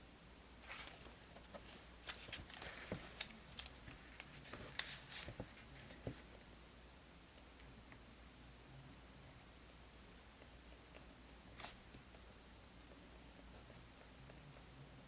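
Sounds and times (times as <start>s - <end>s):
paper rustling: 0.6s - 6.3s.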